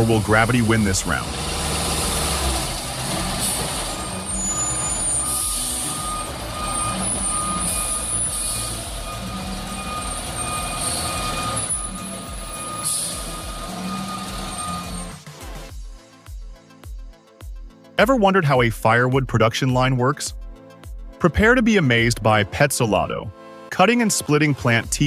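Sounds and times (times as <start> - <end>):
heavy truck engine under load: 0.0 - 15.2
reversing alarm beeping: 0.0 - 15.2.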